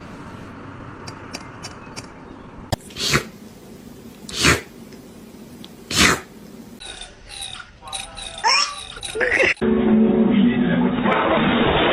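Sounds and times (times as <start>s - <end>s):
cat sneezing: 2.8s - 3.4s, 4.3s - 4.7s, 5.9s - 6.4s.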